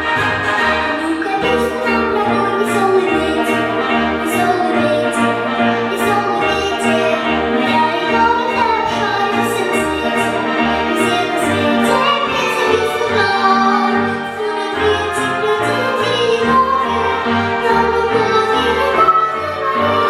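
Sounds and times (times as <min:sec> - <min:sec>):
orchestral music: 0:00.0 - 0:20.0
high percussion hits: 0:19.0 - 0:19.7.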